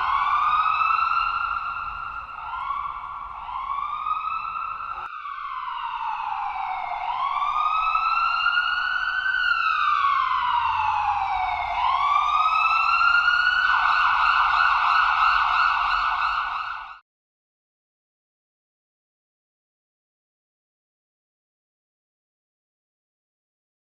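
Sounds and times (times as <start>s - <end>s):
ambulance siren: 0.0s - 17.0s.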